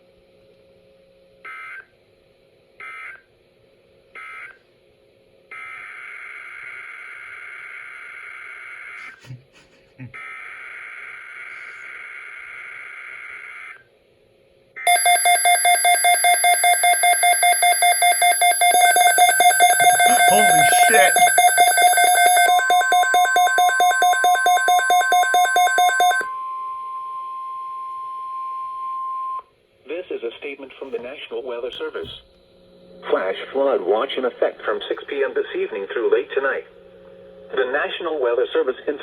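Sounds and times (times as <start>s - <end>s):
buzzy data tone bursts: 14.9s - 26.2s
rapid alert alarm beeping: 14.9s - 26.3s.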